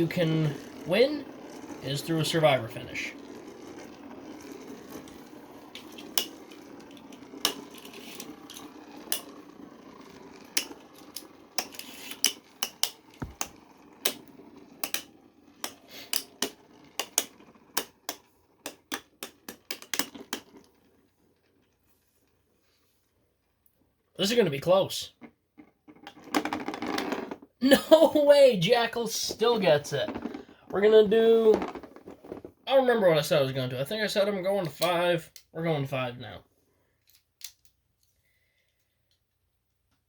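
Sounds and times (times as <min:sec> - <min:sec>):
spinning tops whirring: 0:00.0 - 0:22.6.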